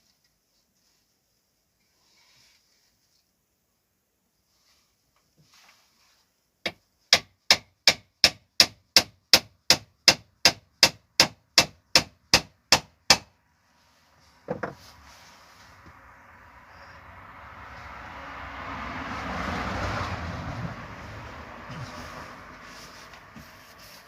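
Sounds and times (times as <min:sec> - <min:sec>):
hammer striking a nail: 0:06.6 - 0:13.3
rising noise: 0:16.0 - 0:23.8.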